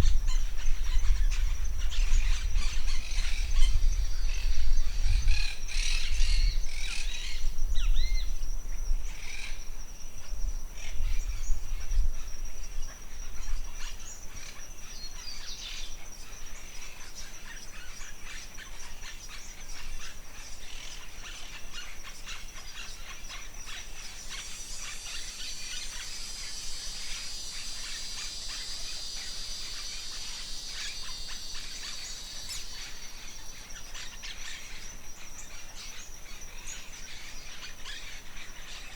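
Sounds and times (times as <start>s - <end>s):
wind rumbling on microphone: 0.0s - 16.7s
high-pitched insect drone: 0.0s - 38.9s
hissing insect chorus: 0.0s - 38.9s
birds chirping and calling: 20.7s - 38.9s.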